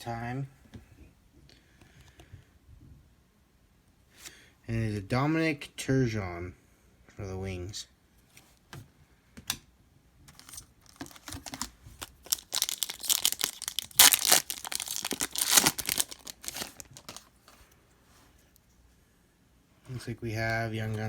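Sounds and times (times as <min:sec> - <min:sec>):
wrapper tearing and crinkling: 0:10.4 - 0:17.3.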